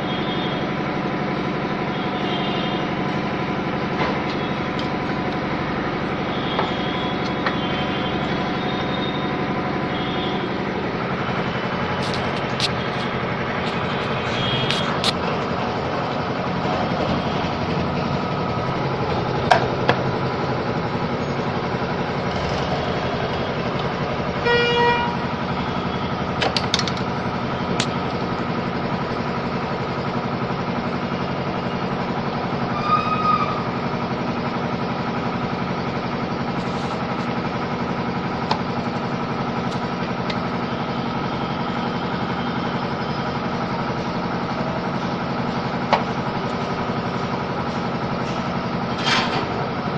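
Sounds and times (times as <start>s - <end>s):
steady mechanical hum: 0.0s - 49.9s
short horn-like honk: 24.4s - 25.2s.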